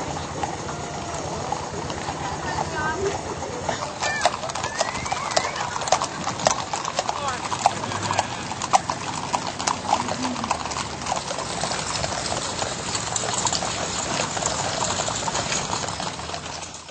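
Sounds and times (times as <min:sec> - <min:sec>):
hooves clattering on pavement: 0:00.0 - 0:16.9.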